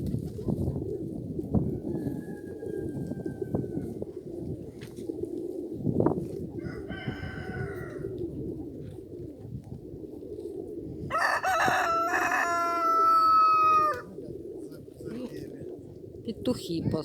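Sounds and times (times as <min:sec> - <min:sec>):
pigeons cooing: 0:00.0 - 0:17.0
rooster crowing: 0:06.6 - 0:08.1, 0:11.1 - 0:14.1.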